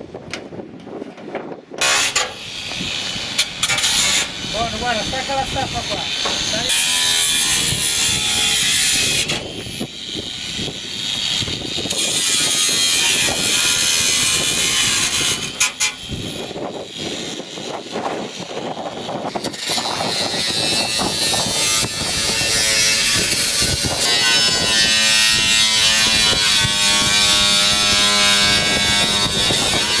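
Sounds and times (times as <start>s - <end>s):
power tool buzzing: 19.0s - 30.0s.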